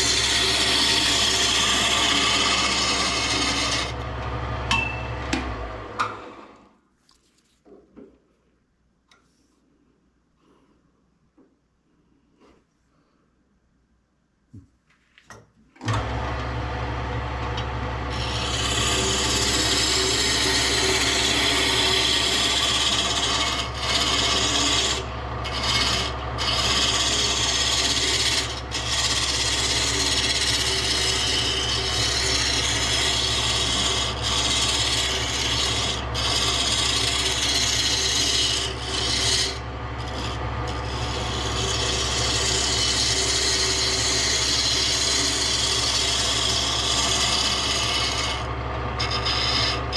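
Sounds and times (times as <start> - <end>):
electric sander on wood: 0.0 - 4.6, 15.9 - 49.9.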